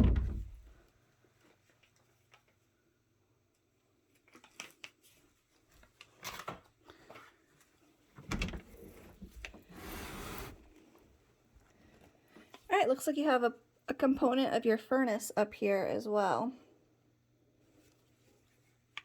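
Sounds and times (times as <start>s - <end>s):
door clicks and knocks: 0.0s - 0.7s, 8.2s - 8.7s
loud door thump: 0.0s - 0.7s
door scraping over carpet: 8.8s - 10.8s.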